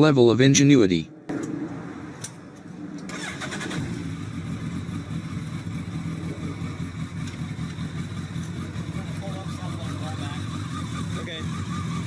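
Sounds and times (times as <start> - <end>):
engine idling: 3.0 - 12.0.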